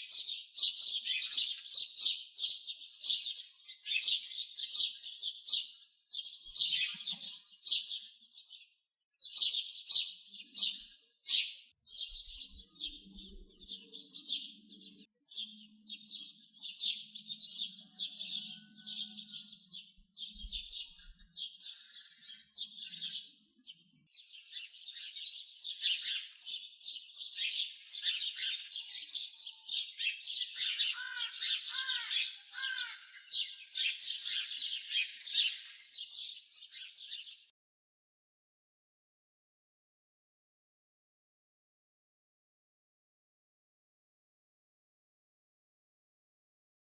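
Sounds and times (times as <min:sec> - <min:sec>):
small birds chirping: 0:00.0 - 0:37.5.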